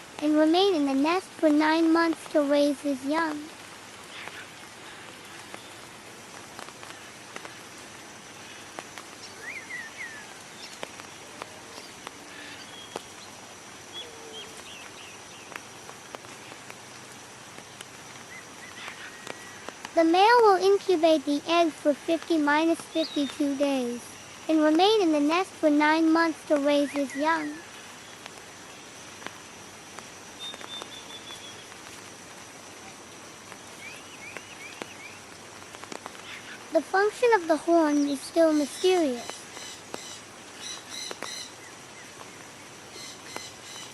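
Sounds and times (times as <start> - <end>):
steady hiss: 0.0 - 43.9
small birds chirping: 6.8 - 19.7, 20.8 - 28.8, 30.4 - 31.8, 33.6 - 43.9
bird chirps: 30.4 - 31.6.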